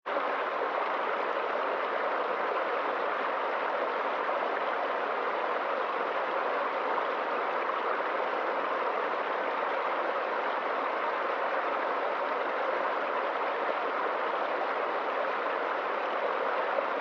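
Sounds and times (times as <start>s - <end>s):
stream water rushing: 0.1s - 17.0s.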